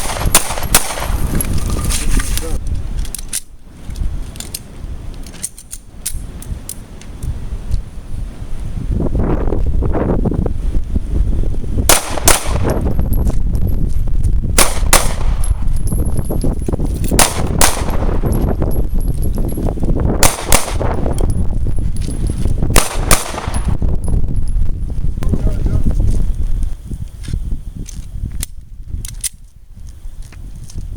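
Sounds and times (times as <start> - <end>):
pistol double shots: 0.0 - 1.2, 11.9 - 12.8, 14.6 - 15.5, 17.2 - 18.2, 20.2 - 21.0, 22.8 - 23.7
steady low rumble: 6.0 - 30.8.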